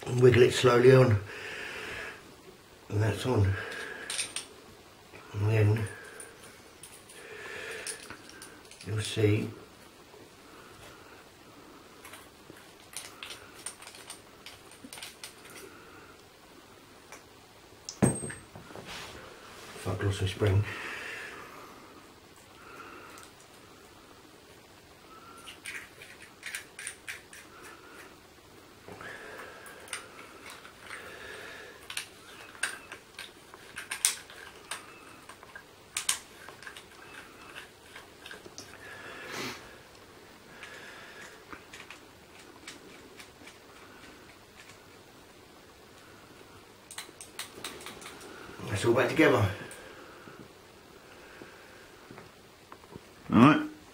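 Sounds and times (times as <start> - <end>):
small metal parts clicking: 3.7 - 4.5, 6.0 - 8.9, 12.0 - 15.7, 25.4 - 27.5, 31.8 - 38.8, 46.9 - 48.3.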